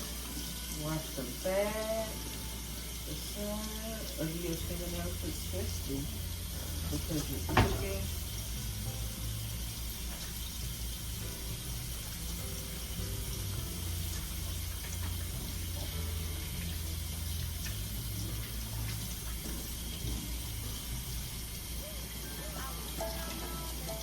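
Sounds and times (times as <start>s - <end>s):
tap running into a sink: 4.5s - 21.6s.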